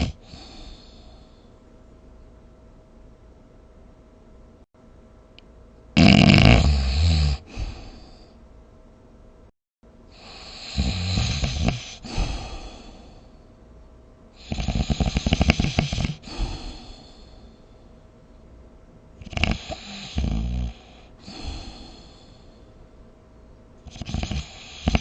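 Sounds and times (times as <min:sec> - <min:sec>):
person snoring: 0:00.0 - 0:01.4, 0:06.0 - 0:08.4, 0:10.2 - 0:13.3, 0:14.4 - 0:17.5, 0:19.2 - 0:22.7, 0:23.9 - 0:25.0.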